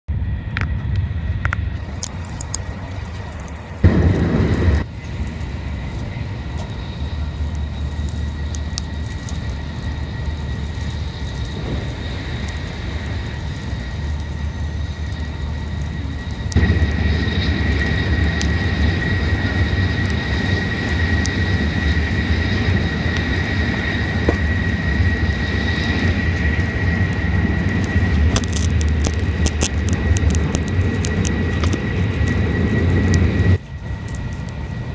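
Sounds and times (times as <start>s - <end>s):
train cabin rumble: 1.5s - 34.9s.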